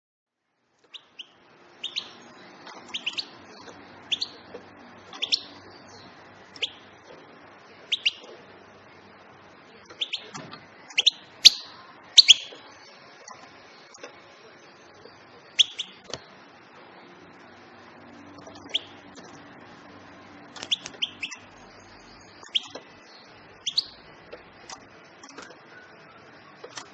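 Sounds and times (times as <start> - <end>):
bird chirping call notes: 0.9 - 4.5, 5.1 - 7.0, 7.9 - 8.4, 9.8 - 14.0, 14.9 - 16.3, 18.1 - 19.6, 20.5 - 26.9.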